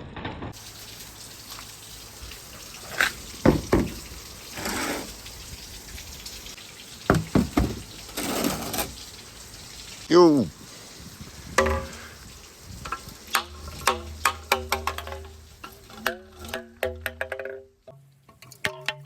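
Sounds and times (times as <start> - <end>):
marbles knocking on track: 16.7 - 17.8.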